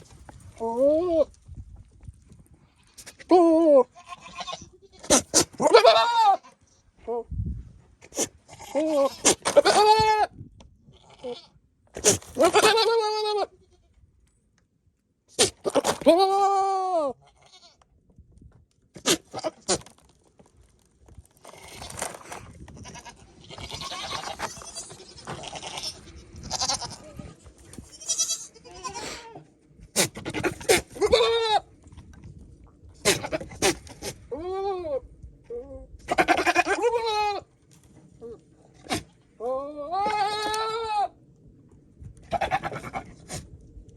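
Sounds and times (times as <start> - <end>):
goats bleating: 3.8 - 6.6, 12.4 - 13.7, 22.8 - 29.5, 30.4 - 31.6, 36.1 - 37.5, 39.5 - 41.1
soft rough goat noises: 15.3 - 43.9.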